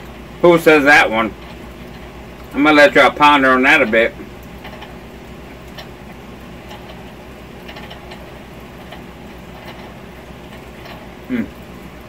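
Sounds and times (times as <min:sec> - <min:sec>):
low steady hum: 0:00.0 - 0:12.0
person humming mm: 0:11.3 - 0:11.6.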